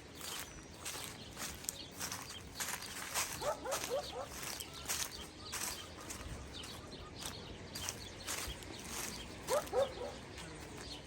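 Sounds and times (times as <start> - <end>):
dog yelping: 3.4 - 4.4, 9.5 - 10.2.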